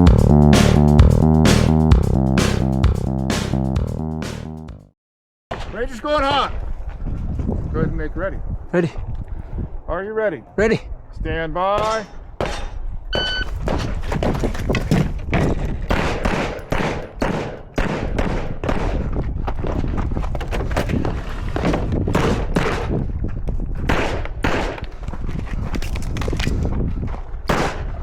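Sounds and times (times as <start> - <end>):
shot timer beep: 13.2 - 13.5
gunshots: 15.9 - 19.0, 23.9 - 24.8, 27.5 - 27.9.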